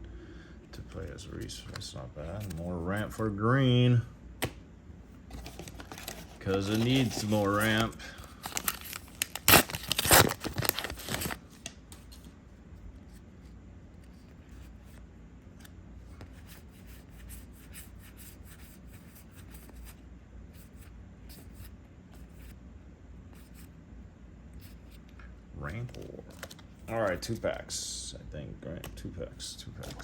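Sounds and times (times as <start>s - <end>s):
trading cards being handled: 0.9s - 3.4s, 5.3s - 12.4s, 25.7s - 27.6s, 28.8s - 30.0s
wrapper crinkling: 5.3s - 11.6s.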